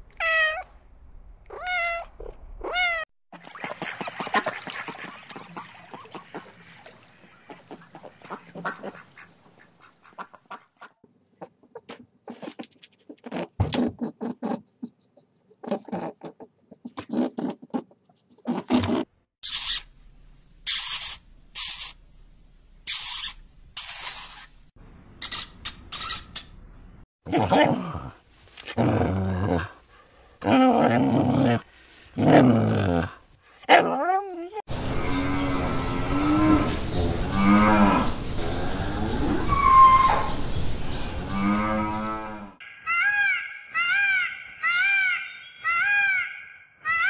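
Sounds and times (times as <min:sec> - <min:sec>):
bird calls: 0:03.8 - 0:10.6, 0:42.6 - 0:47.0
harsh repeated bird calls: 0:25.1 - 0:26.6, 0:42.6 - 0:47.0.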